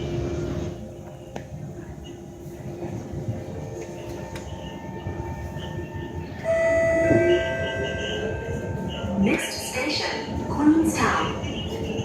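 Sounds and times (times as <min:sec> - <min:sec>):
train rumble: 0:00.0 - 0:12.0
high whine of held tones: 0:05.8 - 0:09.9.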